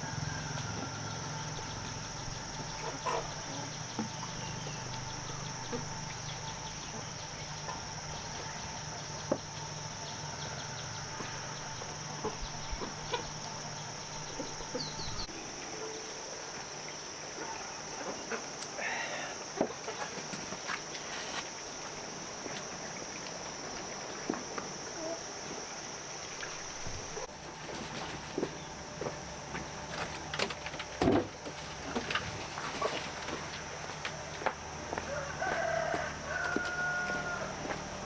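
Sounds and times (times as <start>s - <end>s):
high insect drone: 0.0s - 38.0s
chickens clucking: 0.1s - 9.6s, 10.3s - 15.2s, 27.1s - 38.0s.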